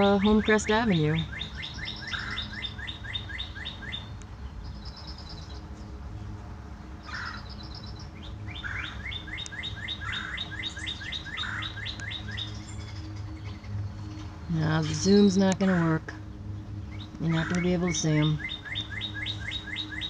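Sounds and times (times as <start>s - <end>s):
bird high rapid trills: 0.0s - 5.7s, 7.0s - 20.0s.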